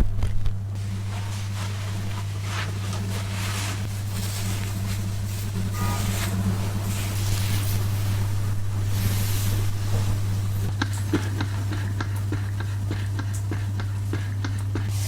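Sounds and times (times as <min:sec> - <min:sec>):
steady low hum: 0:00.0 - 0:15.0
water and hands in wet hair: 0:00.8 - 0:15.0.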